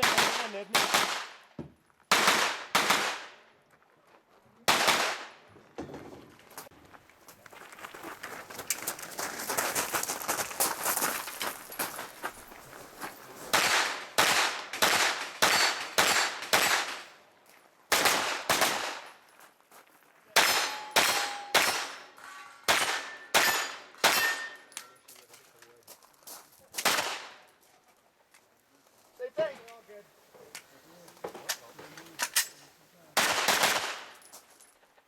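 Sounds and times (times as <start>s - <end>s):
carbine gunshots: 0.0s - 1.4s, 2.1s - 3.4s, 4.7s - 5.4s, 13.5s - 17.0s, 17.9s - 19.1s, 20.4s - 22.1s, 22.7s - 24.6s, 26.8s - 27.4s, 33.2s - 34.2s
steel targets ringing: 20.4s - 24.9s.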